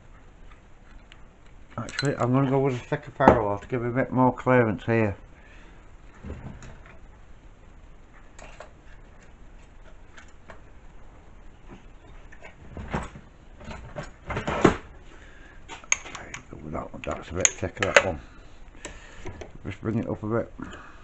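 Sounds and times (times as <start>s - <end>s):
light metal clinks and clunks: 1.8s - 2.2s.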